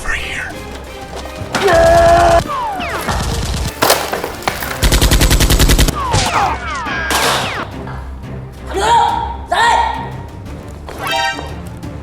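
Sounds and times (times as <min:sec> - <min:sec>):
automatic gunfire burst: 0:04.8 - 0:05.9.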